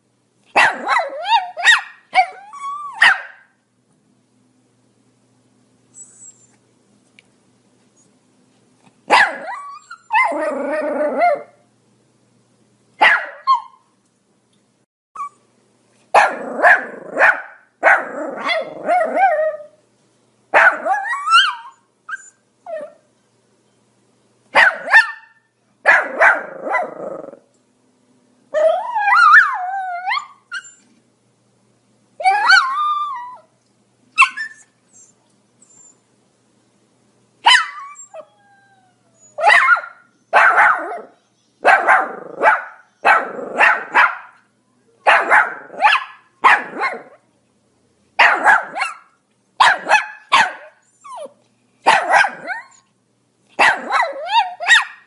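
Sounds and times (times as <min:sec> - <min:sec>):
dog barking: 0:00.5 - 0:02.4, 0:03.0 - 0:03.5, 0:09.1 - 0:09.6, 0:13.0 - 0:13.8, 0:16.2 - 0:19.1, 0:20.6 - 0:21.5, 0:24.6 - 0:27.0, 0:39.4 - 0:44.4, 0:45.0 - 0:47.2, 0:48.2 - 0:50.8, 0:51.8 - 0:52.7, 0:53.6 - 0:55.0
dog yelping: 0:00.6 - 0:03.5, 0:09.1 - 0:11.6, 0:13.0 - 0:13.8, 0:16.2 - 0:19.7, 0:20.6 - 0:23.0, 0:24.6 - 0:27.4, 0:28.6 - 0:30.8, 0:32.2 - 0:33.5, 0:34.2 - 0:35.1, 0:37.5 - 0:38.6, 0:39.2 - 0:44.4, 0:45.1 - 0:47.2, 0:48.2 - 0:52.8, 0:53.6 - 0:55.0.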